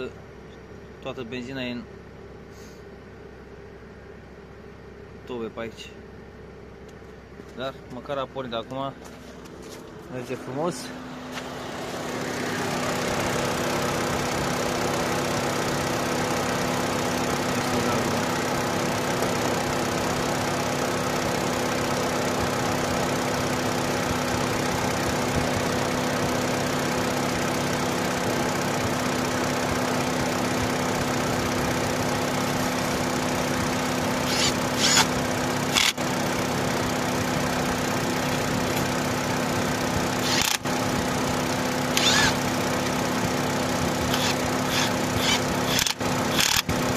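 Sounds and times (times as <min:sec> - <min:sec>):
petrol engine idling: 0:01.9 - 0:46.9
short clicks: 0:44.1 - 0:46.7.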